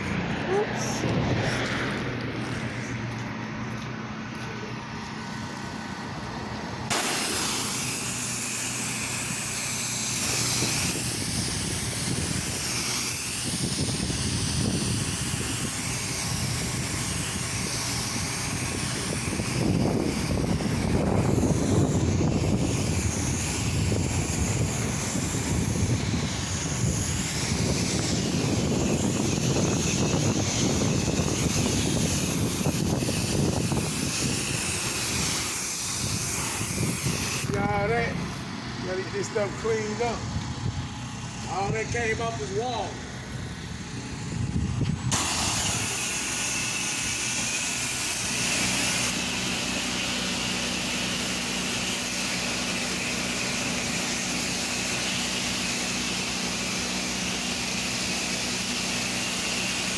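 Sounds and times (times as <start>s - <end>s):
pressure washer water jet hissing: 6.7s - 40.2s, 44.9s - 59.9s.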